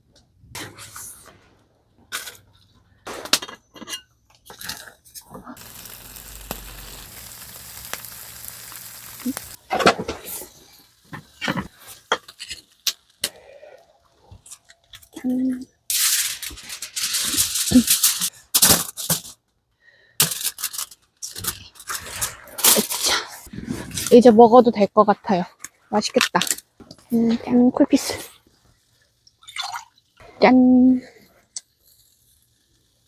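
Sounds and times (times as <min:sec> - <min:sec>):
steady hiss: 0:05.6 - 0:13.8.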